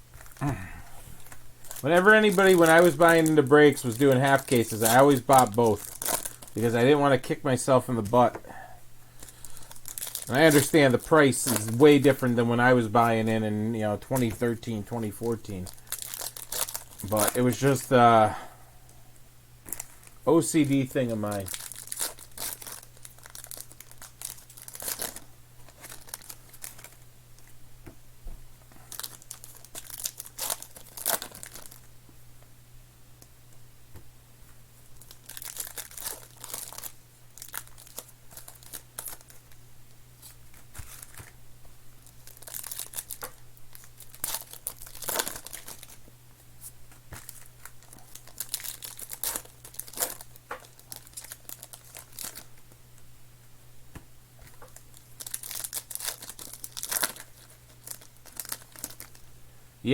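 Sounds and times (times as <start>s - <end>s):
low steady hum: 0.0s - 59.9s
plastic and foil wrapping tearing: 1.2s - 7.2s, 9.1s - 13.3s, 14.1s - 18.1s, 19.7s - 27.0s, 28.8s - 31.9s, 35.0s - 39.6s, 40.2s - 41.4s, 42.0s - 46.0s, 47.1s - 52.5s, 54.5s - 59.3s.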